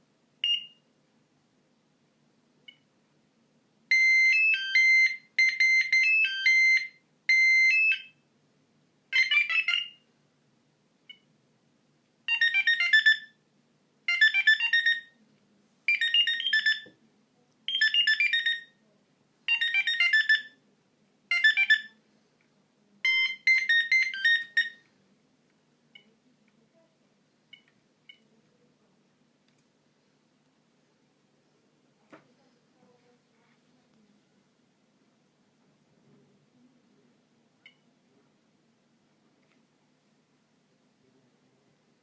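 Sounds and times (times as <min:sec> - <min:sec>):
shrill beeping ringtone melodies: 0:03.9 - 0:08.2, 0:09.1 - 0:10.1, 0:12.3 - 0:13.4, 0:14.1 - 0:15.2, 0:15.9 - 0:17.0, 0:17.7 - 0:18.8, 0:19.5 - 0:20.6, 0:21.3 - 0:22.0, 0:23.0 - 0:24.8.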